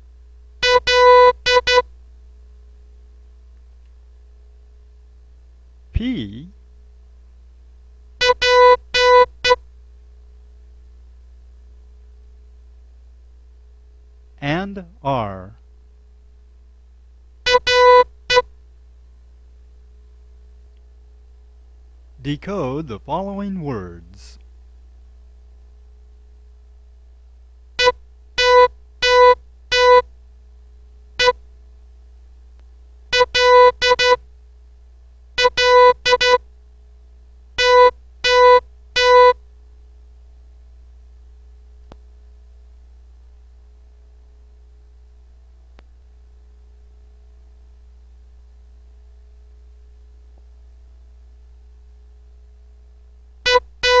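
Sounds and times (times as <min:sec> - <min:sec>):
morse code beeps: 0:00.6 - 0:01.8, 0:08.2 - 0:09.3, 0:17.5 - 0:18.4, 0:27.8 - 0:30.0, 0:33.2 - 0:34.2, 0:35.4 - 0:36.4, 0:37.6 - 0:39.4, 0:53.5 - 0:54.0.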